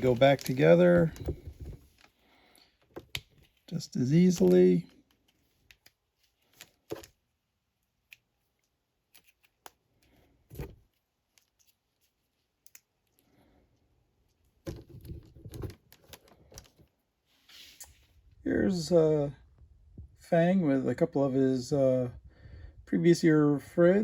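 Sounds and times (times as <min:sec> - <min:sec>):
plastic parts clicking: 0:14.6 - 0:16.9.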